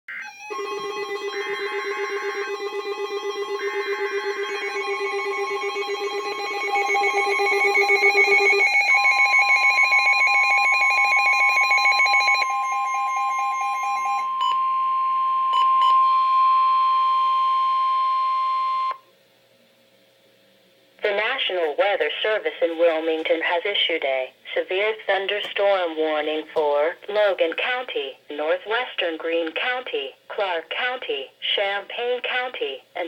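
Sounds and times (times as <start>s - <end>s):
electronic alarm tones beeping: 0.1s - 19.0s
steady warning tone: 0.2s - 19.0s.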